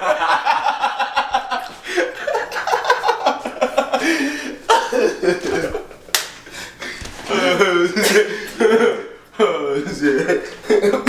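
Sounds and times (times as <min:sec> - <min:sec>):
young men laughing: 0:00.0 - 0:11.0
cough: 0:08.0 - 0:08.4.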